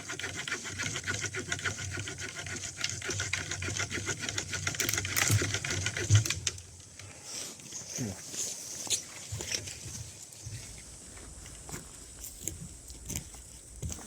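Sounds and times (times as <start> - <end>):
folding saw cutting wood: 0.0 - 6.5.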